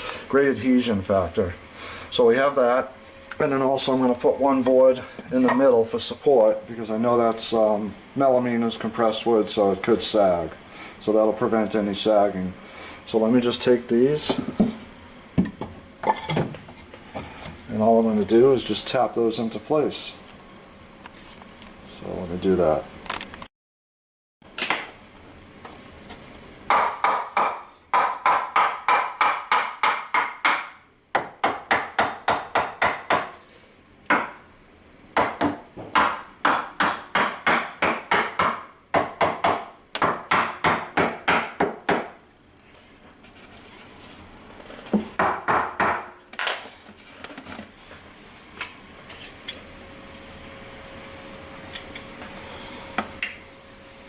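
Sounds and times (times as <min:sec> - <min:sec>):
hammer knocking wooden boards: 0:26.7 - 0:33.3, 0:35.2 - 0:42.2, 0:45.2 - 0:46.1.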